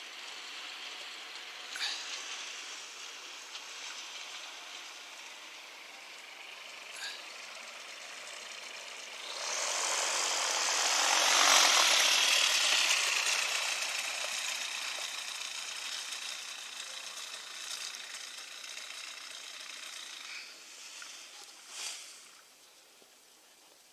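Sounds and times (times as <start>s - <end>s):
propeller aircraft passing: 0.1s - 20.7s.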